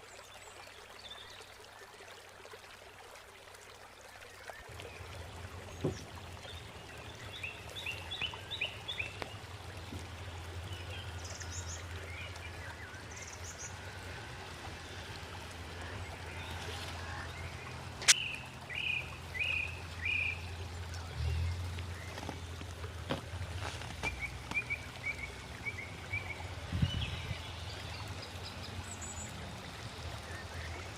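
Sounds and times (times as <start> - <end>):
small birds chirping: 4.4 - 14.2, 15.8 - 22.7
low outdoor rumble: 4.6 - 30.9
sharp click: 18.0 - 18.2.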